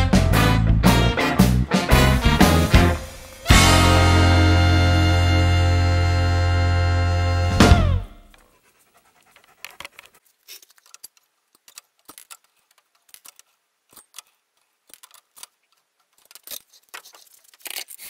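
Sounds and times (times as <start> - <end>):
metallic clicks of hand tools: 9.6 - 18.0.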